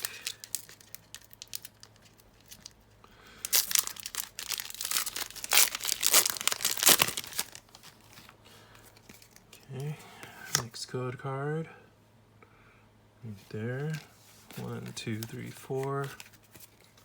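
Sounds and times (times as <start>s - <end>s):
foil wrapper crinkling and tearing: 0.0s - 9.5s.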